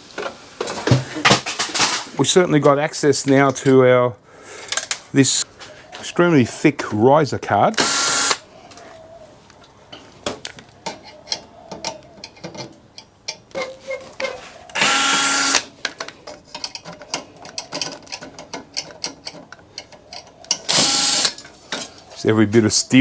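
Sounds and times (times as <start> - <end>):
power screwdriver whirring: 7.8 - 8.4, 14.8 - 15.7, 20.7 - 21.4.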